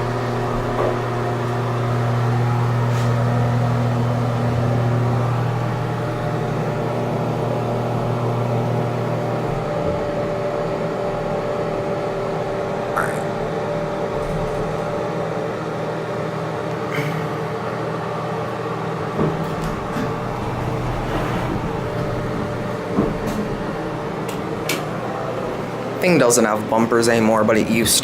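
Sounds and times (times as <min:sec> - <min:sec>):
elevator pump motor hum: 0:00.0 - 0:28.0.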